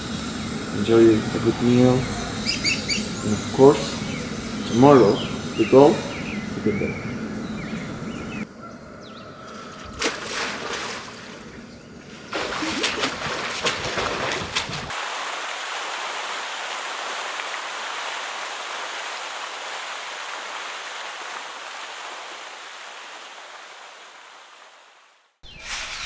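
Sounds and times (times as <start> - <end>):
running water rushing: 0.0 - 8.5, 9.8 - 26.0
water splashing and trickling: 9.5 - 24.0.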